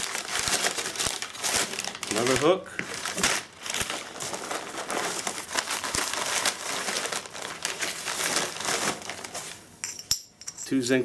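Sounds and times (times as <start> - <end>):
packing material crinkling: 0.0 - 9.7.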